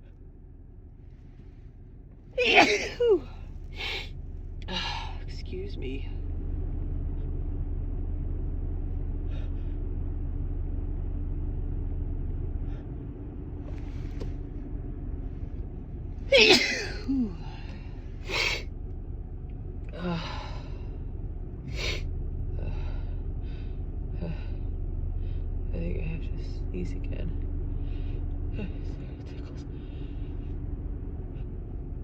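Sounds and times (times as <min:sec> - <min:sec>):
low car rumble: 0:00.0 - 0:32.0
woman sneezing: 0:02.4 - 0:04.0, 0:16.3 - 0:17.4
gasping breaths and sniffles: 0:17.6 - 0:18.7.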